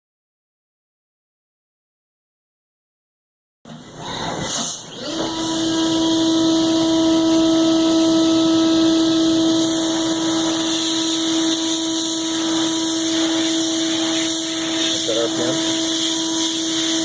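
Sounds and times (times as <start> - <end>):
mill spindle whine: 3.7 - 17.0.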